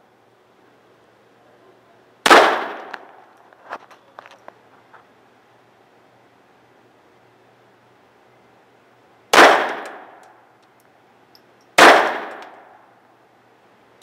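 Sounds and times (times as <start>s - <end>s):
pistol shots with echo: 2.2s - 3.1s, 9.3s - 10.2s, 11.8s - 12.8s.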